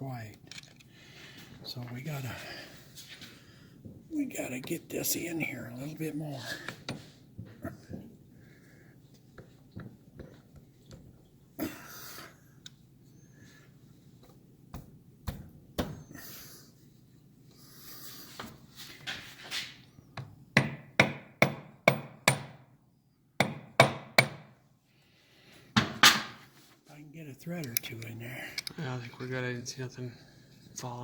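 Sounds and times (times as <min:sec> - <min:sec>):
metal parts knocking and clinking: 0:00.4 - 0:00.9
hammer tapping metal: 0:20.6 - 0:22.6, 0:23.4 - 0:24.5.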